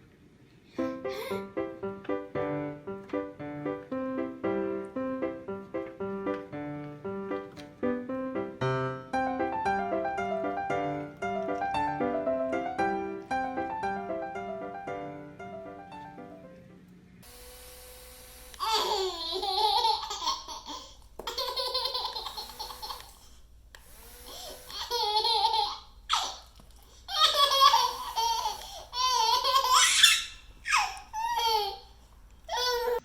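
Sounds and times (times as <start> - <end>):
baby laughing: 18.6 - 23.3, 24.3 - 33.0.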